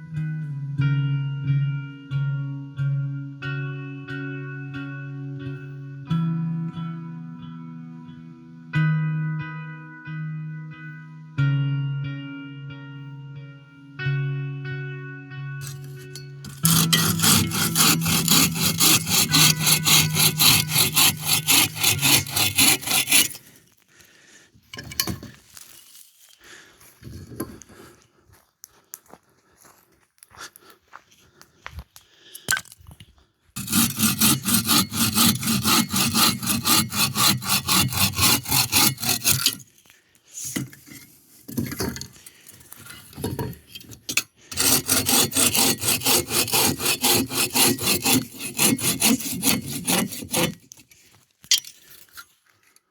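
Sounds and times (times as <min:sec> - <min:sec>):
hand saw cutting wood: 0:15.6 - 0:23.7, 0:33.6 - 0:52.2
knocks and handling of wood: 0:24.7 - 0:26.4, 0:40.5 - 0:44.3.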